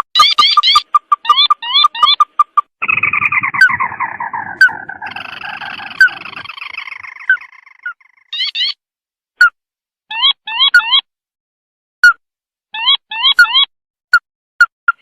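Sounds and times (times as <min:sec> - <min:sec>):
chattering bird trill: 0:00.0 - 0:08.8
recorded bird calls: 0:00.0 - 0:08.8, 0:10.1 - 0:11.1, 0:12.8 - 0:13.7
short bird chirps: 0:02.8 - 0:08.8.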